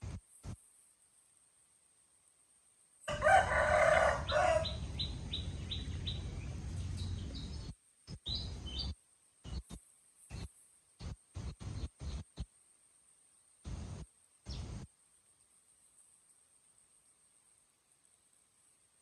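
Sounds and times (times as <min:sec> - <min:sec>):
rooster crowing: 0:03.0 - 0:05.1.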